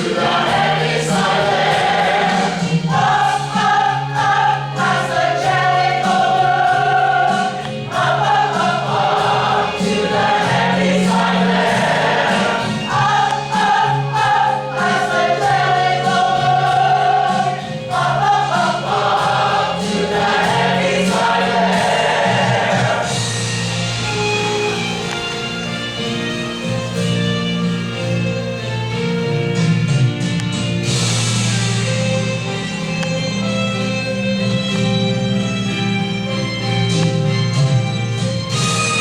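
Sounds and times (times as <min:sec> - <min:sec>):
choir singing: 0:00.0 - 0:29.8
instrumental accompaniment: 0:00.0 - 0:39.0.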